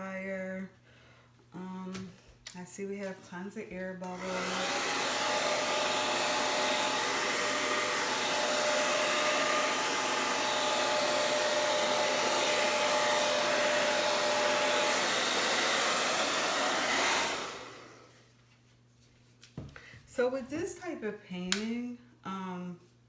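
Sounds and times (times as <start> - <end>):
blow dryer running: 4.0 - 18.2.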